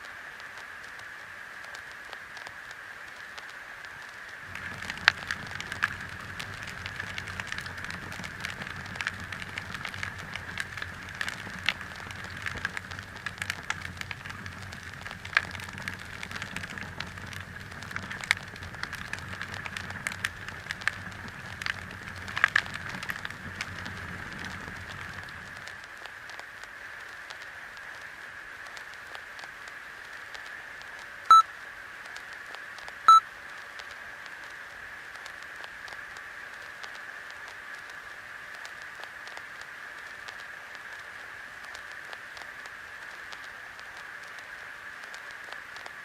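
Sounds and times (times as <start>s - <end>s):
crackling with sharp pops: 0.0s - 46.0s.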